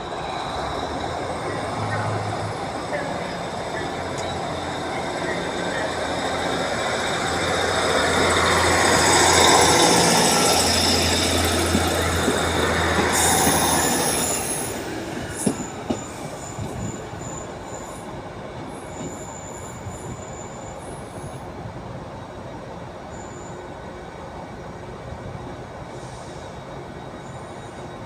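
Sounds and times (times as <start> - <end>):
high wheel squeal: 0.0 - 18.1
train engine humming: 0.0 - 28.0
train rolling rumble: 0.0 - 28.0.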